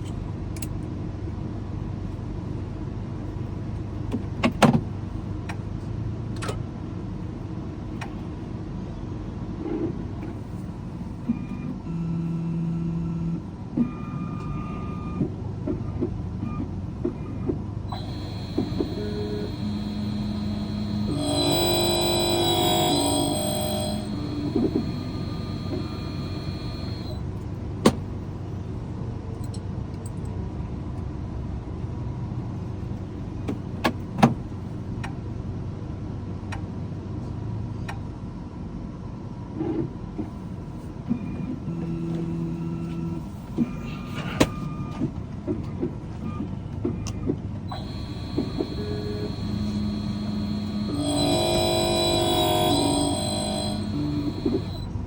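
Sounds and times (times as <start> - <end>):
short low hums: 17.9 - 27.2, 47.7 - 55.0.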